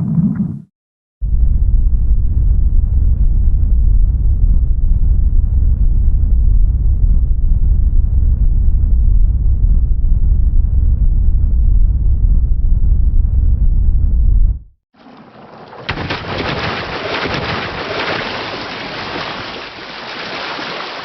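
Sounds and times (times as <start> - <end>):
underwater churning water: 15.0 - 21.0.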